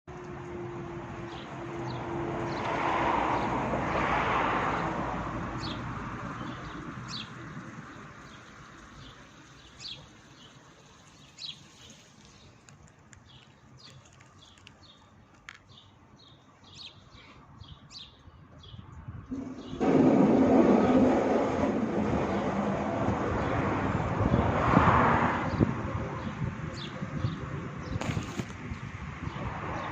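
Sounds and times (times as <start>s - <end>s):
vehicle passing: 0.1s - 9.5s, 19.3s - 29.9s
small birds chirping: 1.2s - 2.7s, 5.5s - 19.0s, 25.5s - 29.9s.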